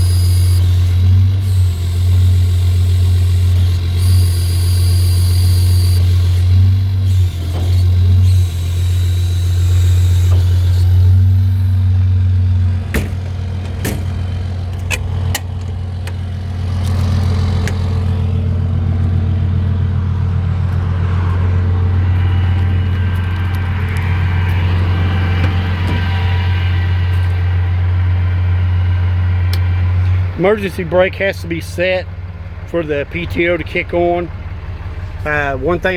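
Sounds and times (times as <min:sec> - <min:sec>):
diesel engine running: 0:00.0 - 0:35.9.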